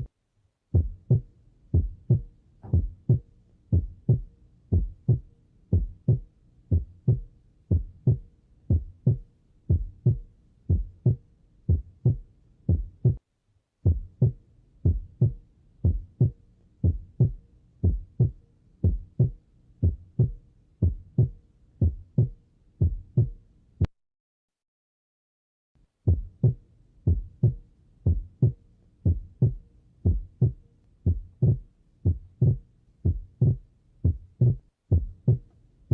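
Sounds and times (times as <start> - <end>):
heartbeat through stethoscope: 0.7 - 13.2, 13.8 - 23.4, 26.1 - 35.5.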